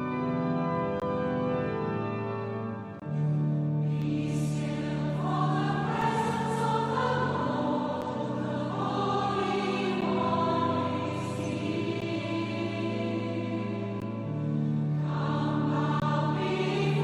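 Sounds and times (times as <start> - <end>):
organ chords: 0.0 - 17.0
choir singing: 3.8 - 17.0.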